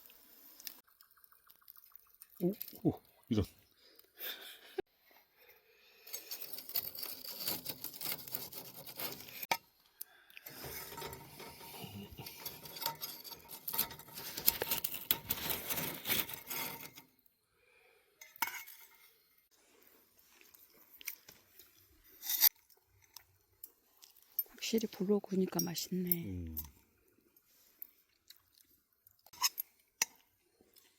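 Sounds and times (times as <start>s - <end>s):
tableware clinking and scraping: 10.5s - 17.0s, 18.2s - 19.2s.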